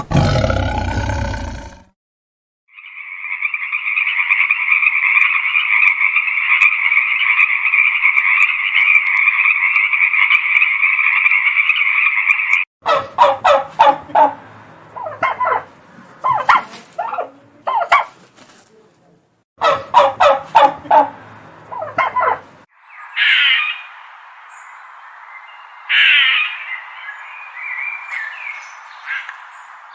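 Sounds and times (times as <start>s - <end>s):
harsh animal call: 0.0s - 1.9s
dense animal calling: 4.0s - 18.1s, 19.6s - 22.6s
rapid rattling animal calls: 15.0s - 18.2s.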